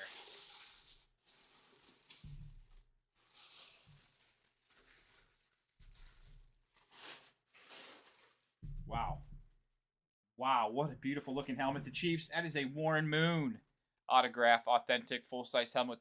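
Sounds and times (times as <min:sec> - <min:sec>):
packaging rustling and crinkling: 0:00.0 - 0:09.6.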